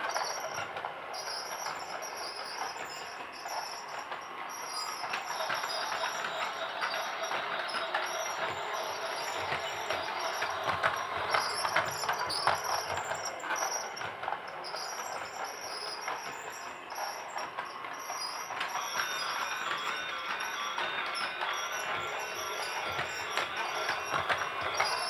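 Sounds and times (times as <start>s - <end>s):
toy train rattling whir: 0.0s - 25.0s
toy train wheels clicking: 0.0s - 25.0s
toy tune playing: 5.3s - 13.1s, 18.8s - 25.0s.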